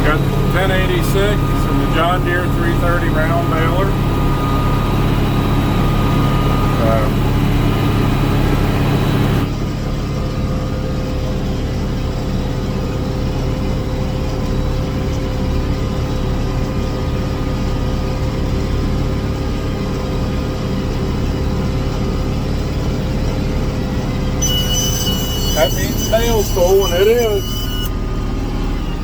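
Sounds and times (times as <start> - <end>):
diesel tractor engine under load: 0.0 - 29.0
steady whine: 24.4 - 29.0.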